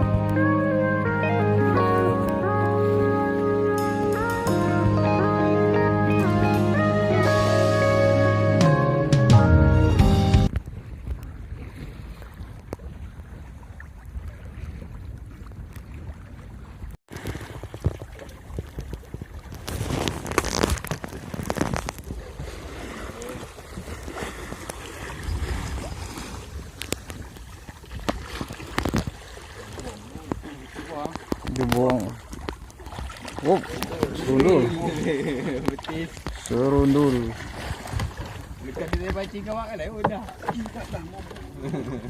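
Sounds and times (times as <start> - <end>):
water lapping around boat: 0.0 - 5.2, 10.5 - 42.0
wind buffeting microphone: 10.5 - 42.0.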